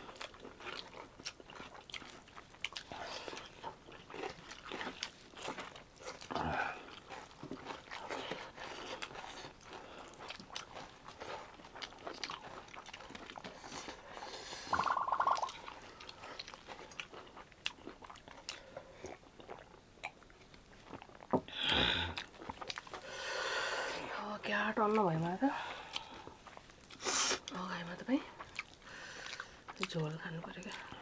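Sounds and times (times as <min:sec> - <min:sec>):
person chewing food: 0:00.0 - 0:24.1, 0:24.9 - 0:27.6, 0:28.3 - 0:31.0
wet mouth clicks: 0:14.6 - 0:15.8.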